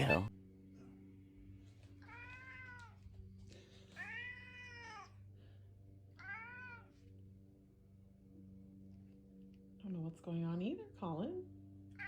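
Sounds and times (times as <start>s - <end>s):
cat meowing: 2.0s - 3.0s, 4.0s - 5.2s, 6.2s - 7.0s.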